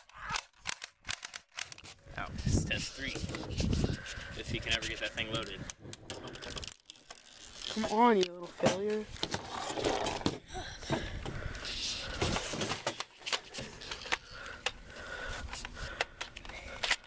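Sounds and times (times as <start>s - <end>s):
airsoft rifle clicks and rattles: 0.0s - 2.0s, 5.4s - 8.4s, 12.3s - 17.0s.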